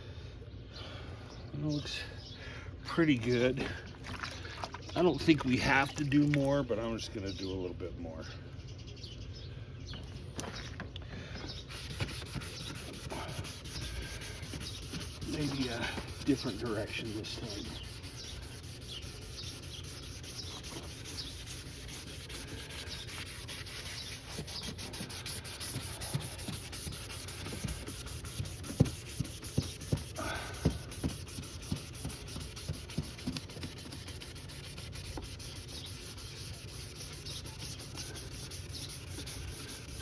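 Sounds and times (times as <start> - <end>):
sandpaper rubbing back and forth: 11.6 - 40.0.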